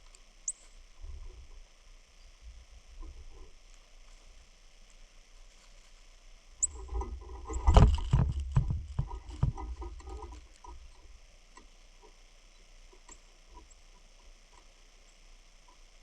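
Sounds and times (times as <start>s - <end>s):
sharp knocks and clicks: 6.6s - 11.0s
wind rumbling on microphone: 6.7s - 11.2s.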